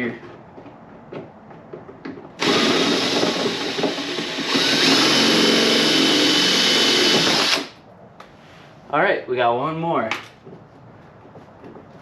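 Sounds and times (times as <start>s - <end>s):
electric drill drilling metal: 2.4s - 7.8s.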